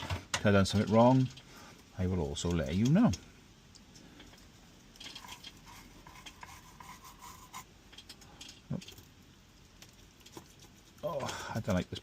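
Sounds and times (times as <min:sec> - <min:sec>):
tools clicking and scraping: 0:02.5 - 0:09.1.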